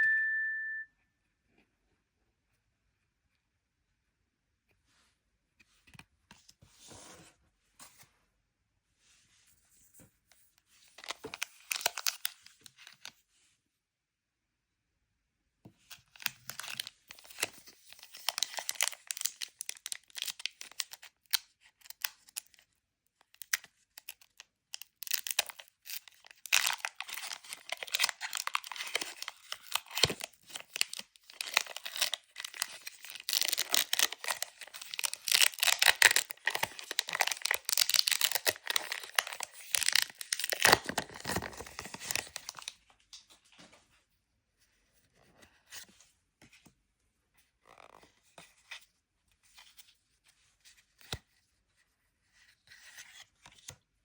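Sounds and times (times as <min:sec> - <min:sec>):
foil wrapper tearing and crinkling: 0:16.2 - 0:22.6, 0:23.4 - 0:42.7.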